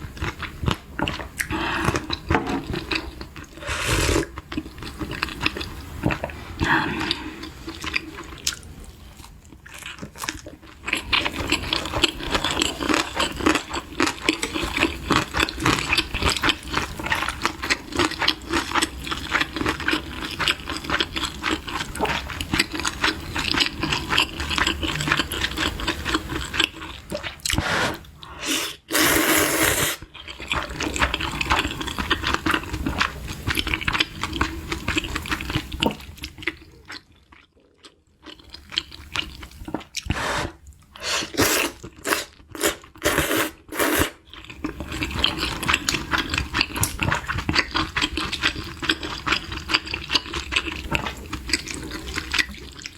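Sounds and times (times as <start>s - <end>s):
loud slurp: 3.6s - 4.3s, 27.4s - 30.1s, 40.0s - 44.2s
wet chewing and mouth clicks: 30.0s - 52.9s.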